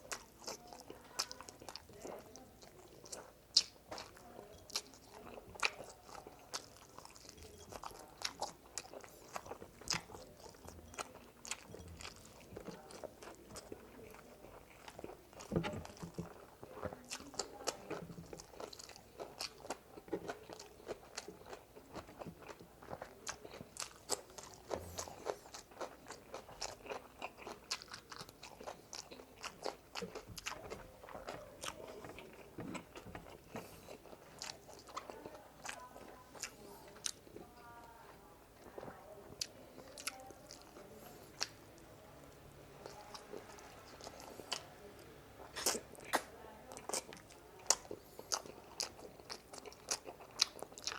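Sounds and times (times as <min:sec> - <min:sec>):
person chewing and crunching: 0:00.0 - 0:37.8, 0:38.6 - 0:41.7, 0:42.8 - 0:50.9.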